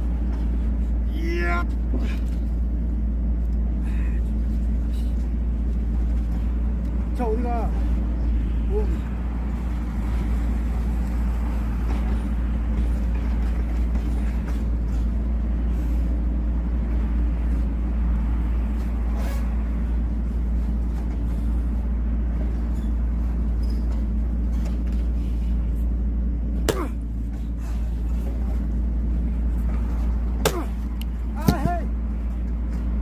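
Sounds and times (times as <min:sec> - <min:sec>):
engine running steadily: 0:00.0 - 0:33.0.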